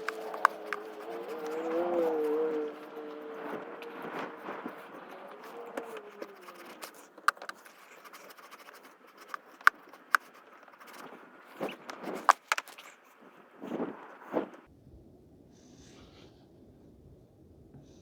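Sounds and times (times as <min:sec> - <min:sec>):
metallic clicks and scrapes: 0:00.0 - 0:13.1.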